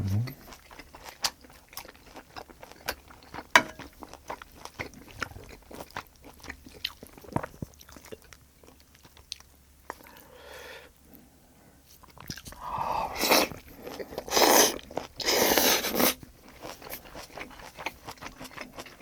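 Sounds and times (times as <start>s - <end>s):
person humming: 0.0s - 0.3s
wet chewing and mouth clicks: 0.0s - 10.3s, 11.9s - 19.0s.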